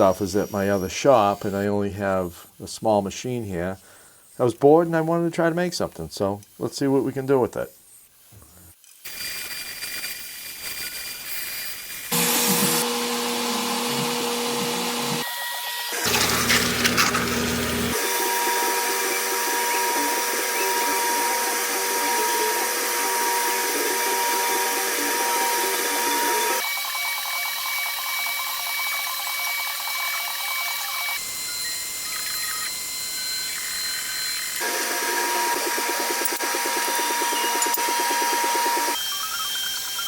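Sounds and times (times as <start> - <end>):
metal grinding and cutting: 9.0 - 26.6, 31.1 - 40.0
power tool motor whine: 11.9 - 40.0.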